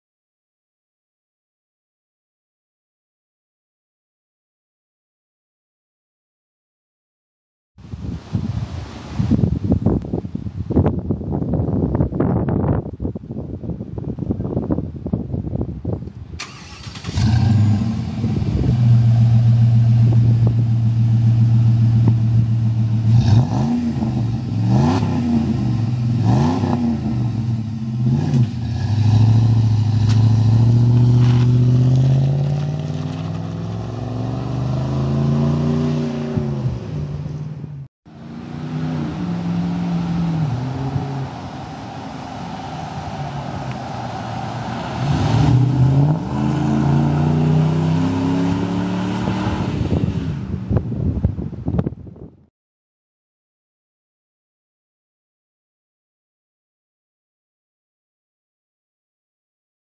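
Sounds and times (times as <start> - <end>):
engine revving: 16.4 - 37.5, 38.1 - 50.6.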